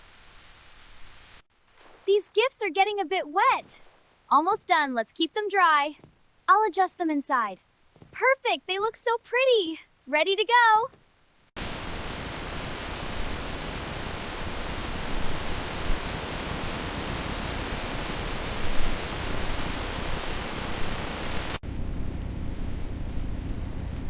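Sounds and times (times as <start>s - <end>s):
steady rain: 0.0s - 2.1s, 3.8s - 4.4s, 10.9s - 24.0s
wind-driven rain rushing: 0.0s - 4.6s, 11.4s - 24.0s.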